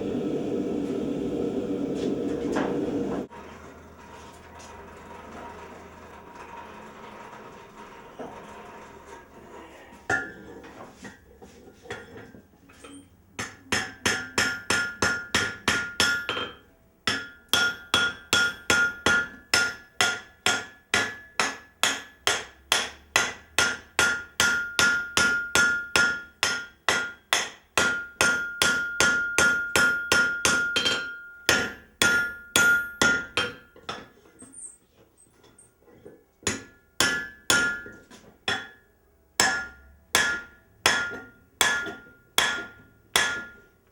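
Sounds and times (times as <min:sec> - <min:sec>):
power hammer pounding hot steel: 0:17.1 - 0:33.7, 0:36.5 - 0:38.8, 0:39.4 - 0:43.6.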